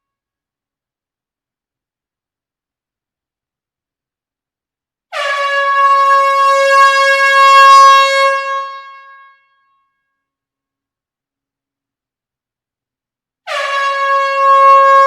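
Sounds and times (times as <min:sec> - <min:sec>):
long horn blast: 0:13.5 - 0:15.0.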